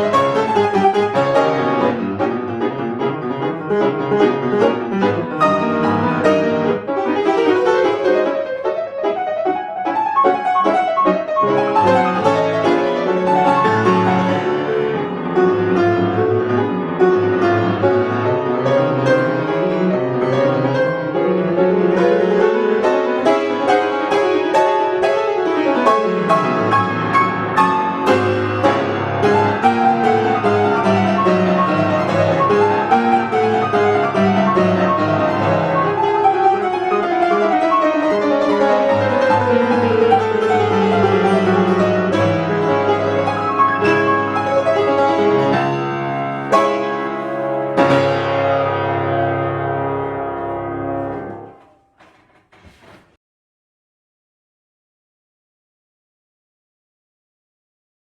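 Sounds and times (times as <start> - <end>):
solo piano playing: 0.0 - 52.0.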